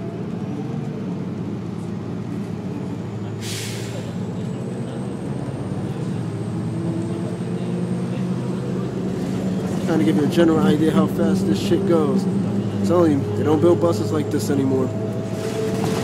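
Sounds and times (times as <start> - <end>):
bus diesel engine running: 0.0 - 16.0
air brake hiss: 3.4 - 4.2.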